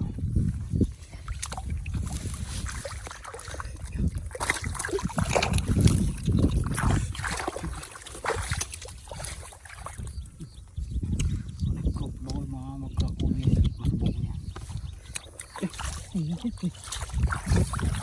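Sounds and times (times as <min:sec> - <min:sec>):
shallow water sloshing and splashing: 0:00.4 - 0:10.4, 0:14.5 - 0:18.0.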